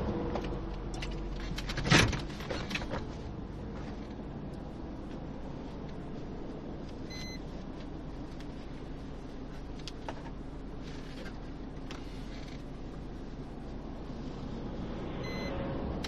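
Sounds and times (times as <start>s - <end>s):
car engine and road hum: 0.0s - 16.0s
high electronic beep: 7.1s - 7.4s, 15.2s - 15.6s.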